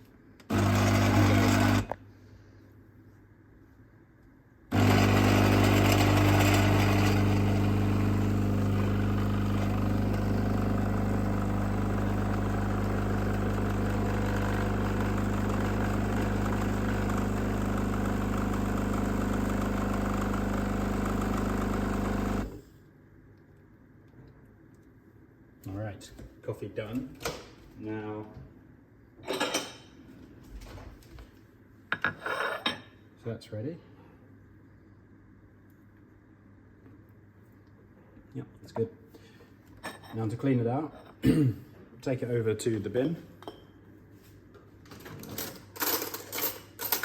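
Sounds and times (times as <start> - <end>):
espresso machine pump humming: 0.5 - 2.0, 4.7 - 22.6.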